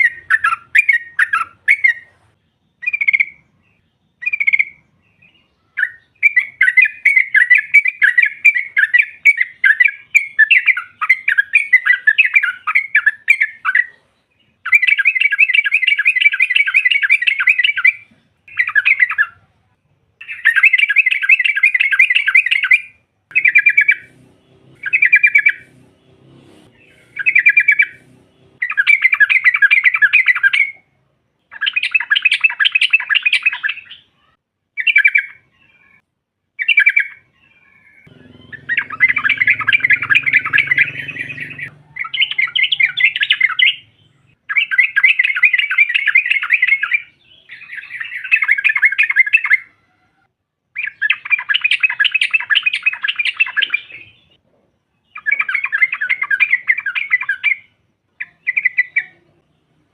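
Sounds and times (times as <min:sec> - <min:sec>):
bulbul chattering: 0:20.2 - 0:30.8, 0:38.0 - 0:49.5.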